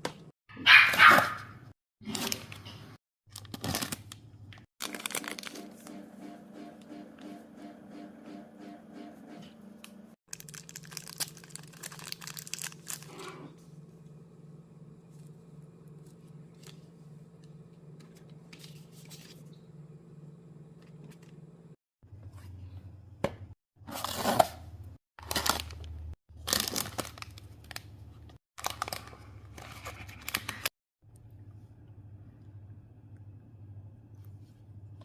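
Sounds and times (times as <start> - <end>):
packaging tearing and crinkling: 3.3 - 4.2, 4.8 - 5.6, 10.3 - 13.2, 25.2 - 27.8, 28.6 - 30.7
low steady hum: 31.0 - 35.0.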